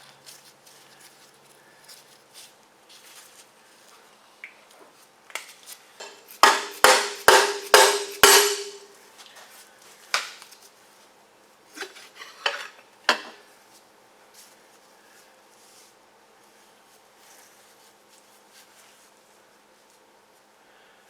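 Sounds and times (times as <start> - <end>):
metal-on-metal strikes ringing: 6.0 - 8.9.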